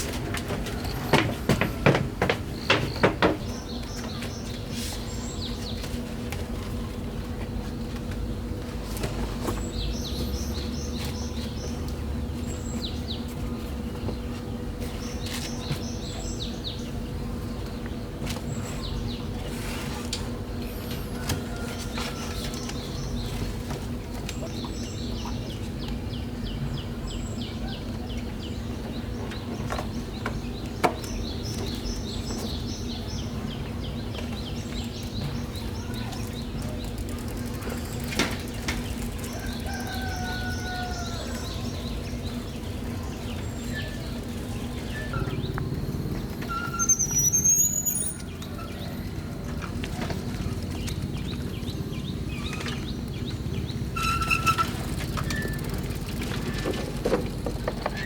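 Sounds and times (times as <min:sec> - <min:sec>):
birds chirping in trills: 0:20.5 - 0:58.0.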